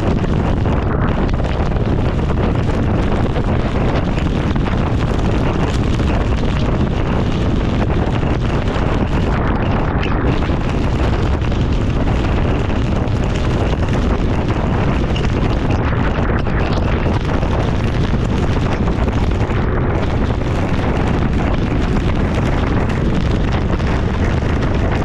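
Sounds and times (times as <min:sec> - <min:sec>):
wind rushing over microphone: 0:00.0 - 0:25.0.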